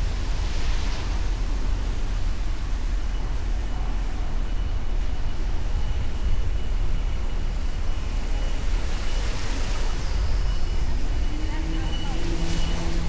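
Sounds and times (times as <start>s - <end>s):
road noise rumble: 7.5s - 13.0s.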